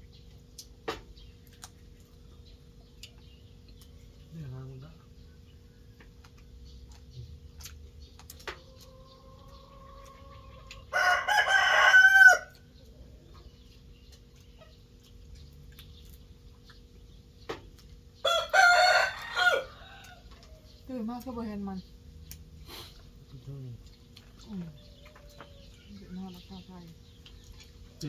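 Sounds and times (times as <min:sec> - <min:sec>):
rooster crowing: 0:10.9 - 0:12.6, 0:18.2 - 0:20.3.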